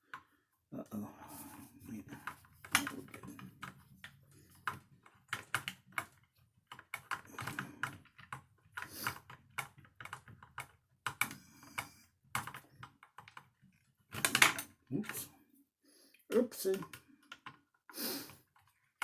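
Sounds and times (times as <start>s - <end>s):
plastic and metal parts clicking: 2.2s - 14.8s.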